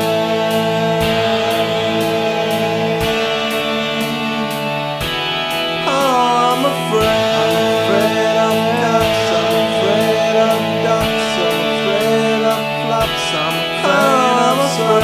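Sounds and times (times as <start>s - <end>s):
sliding lead melody: 1.7s - 15.0s
sustained synth chords: 4.2s - 15.0s.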